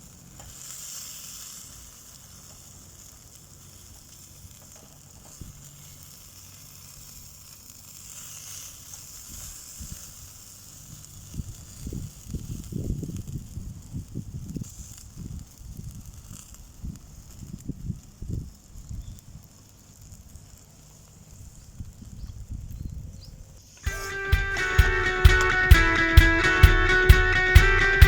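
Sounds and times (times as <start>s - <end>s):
chicken sizzling over charcoal: 0.0s - 24.3s
wind buffeting microphone: 11.3s - 19.2s.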